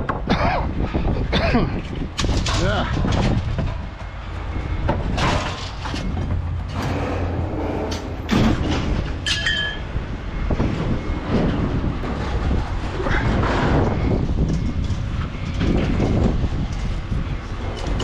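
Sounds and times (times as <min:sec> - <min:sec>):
vehicle low rumble: 0:00.0 - 0:18.0
metallic squeak: 0:04.5 - 0:11.8.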